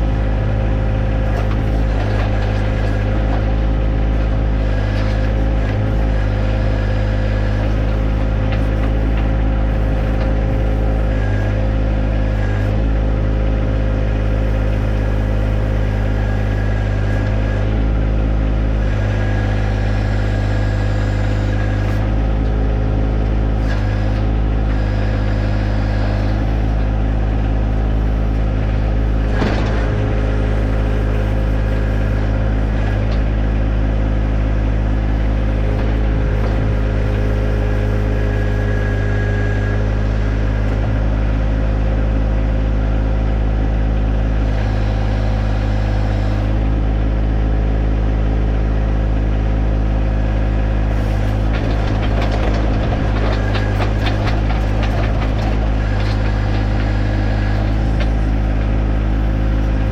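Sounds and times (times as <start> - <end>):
tractor diesel engine running: 0.0 - 59.9
clicking and clatter: 51.0 - 59.9.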